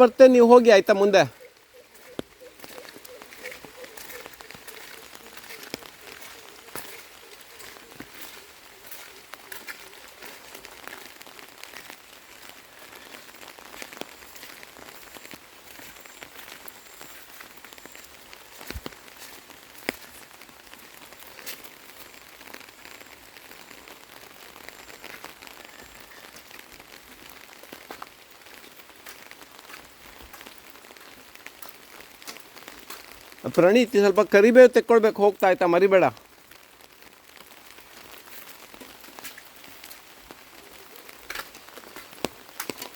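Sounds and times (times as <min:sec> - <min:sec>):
light rain pattering: 0:00.0 - 0:42.9.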